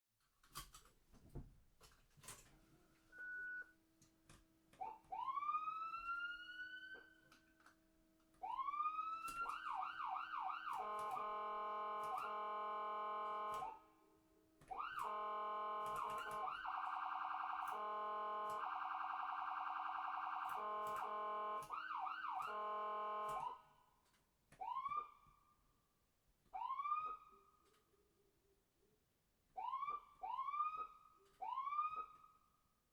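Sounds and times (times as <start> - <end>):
electronic ambulance siren: 4.8 - 7.6, 8.4 - 13.9, 14.6 - 23.8, 24.6 - 25.6, 26.5 - 27.6, 29.6 - 32.5
scattered clicks: 10.6 - 11.2, 12.0 - 12.3, 15.8 - 17.8, 18.4 - 21.8.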